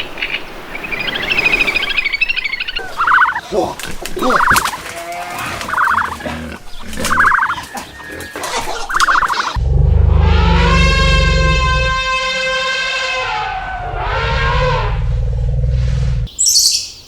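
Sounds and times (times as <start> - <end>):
faint turkey calls: 2.4 - 4.9, 5.6 - 9.6
turkey gobbling: 2.7 - 3.4, 4.2 - 4.9, 5.6 - 9.6.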